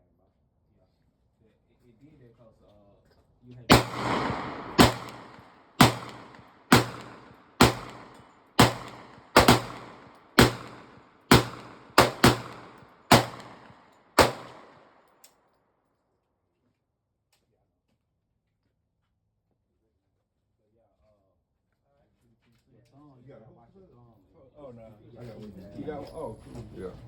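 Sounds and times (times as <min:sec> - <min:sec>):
faint gun click: 0:03.7 - 0:14.8
handgun shots: 0:03.7 - 0:14.8.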